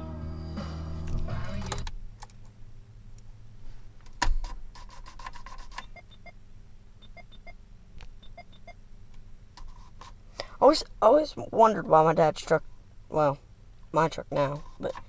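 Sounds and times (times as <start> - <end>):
music: 0.0 - 1.9
truck warning chime beeps: 5.8 - 6.4, 7.0 - 7.6, 8.2 - 8.8.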